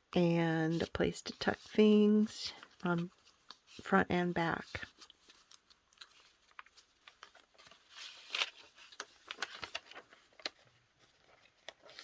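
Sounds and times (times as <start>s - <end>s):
paper pages turning: 4.6s - 12.0s.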